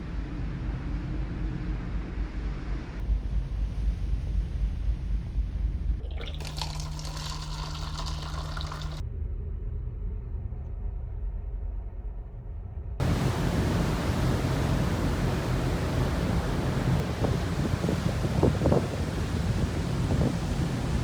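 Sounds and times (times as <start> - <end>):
rushing water: 6.0 - 9.0, 13.0 - 21.0
low engine hum: 8.6 - 21.0
wind noise: 13.0 - 21.0.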